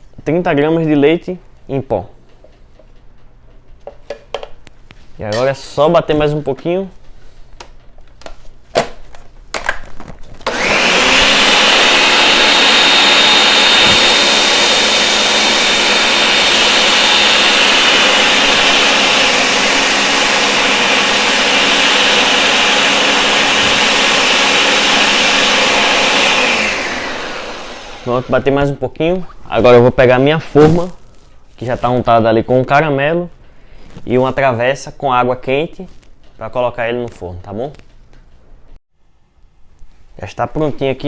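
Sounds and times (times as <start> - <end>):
blender running: 10.4 - 28.8.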